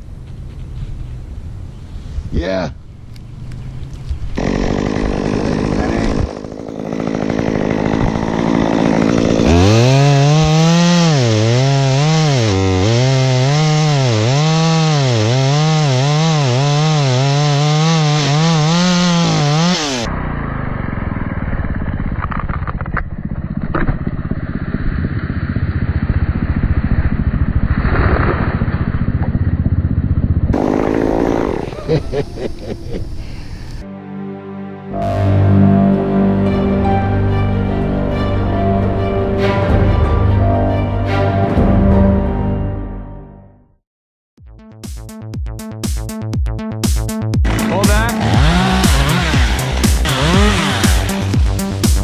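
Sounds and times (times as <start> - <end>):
dull engine noise: 0.0 - 10.6, 19.2 - 33.9, 47.4 - 51.6
chainsaw cutting: 4.3 - 22.7, 30.6 - 32.0, 47.4 - 52.0.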